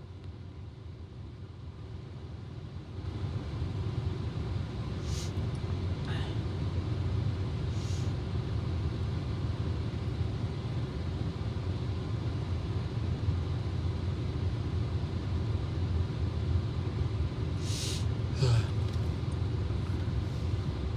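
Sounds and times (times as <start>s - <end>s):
low background rumble: 0.0s - 20.9s
hissing intake of breath: 5.0s - 5.4s, 7.7s - 8.1s, 17.6s - 18.7s.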